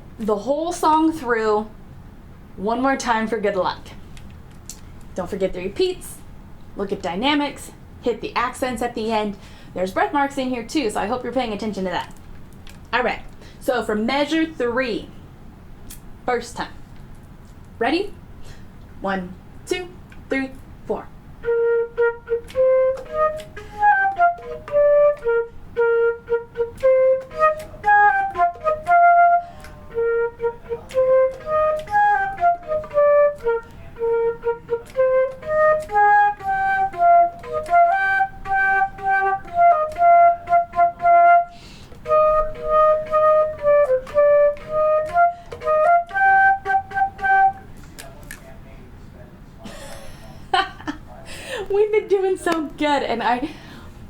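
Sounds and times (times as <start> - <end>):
solo flute melody: 21.4 - 47.8.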